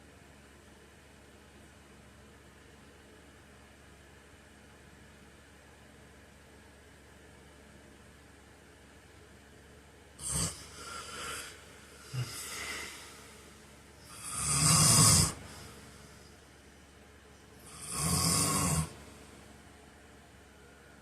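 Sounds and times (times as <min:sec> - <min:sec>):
man snoring: 0:10.2 - 0:16.0, 0:17.6 - 0:19.1.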